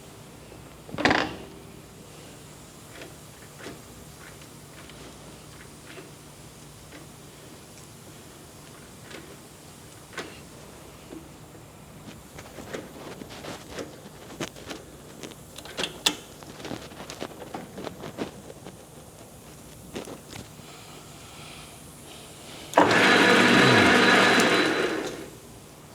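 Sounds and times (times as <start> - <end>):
lathe motor running: 22.1 - 25.5
hands clicking and knocking on lathe: 22.7 - 25.4.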